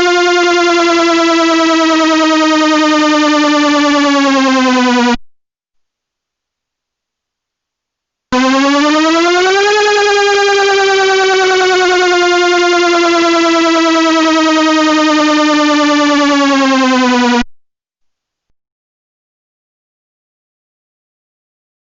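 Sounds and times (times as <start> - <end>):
electronic siren tone: 0.0 - 5.2, 8.4 - 17.5.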